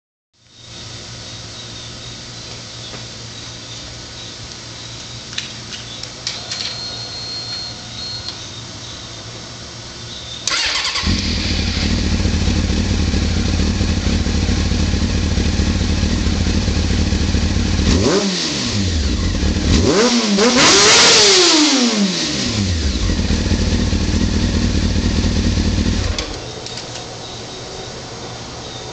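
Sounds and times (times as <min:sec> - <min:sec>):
motorcycle engine idling and revving: 0:09.7 - 0:28.9.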